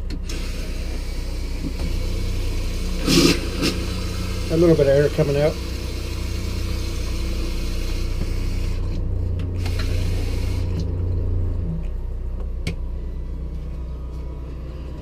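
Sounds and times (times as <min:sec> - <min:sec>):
water pump running: 0:00.0 - 0:11.2
low generator hum: 0:00.0 - 0:15.0
water sputtering from a tap: 0:00.3 - 0:09.0.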